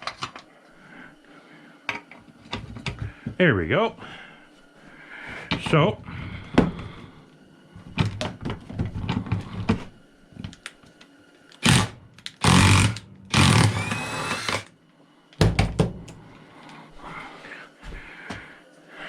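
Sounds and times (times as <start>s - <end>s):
impact wrench hammering: 11.7s - 14.7s, 15.4s - 16.2s.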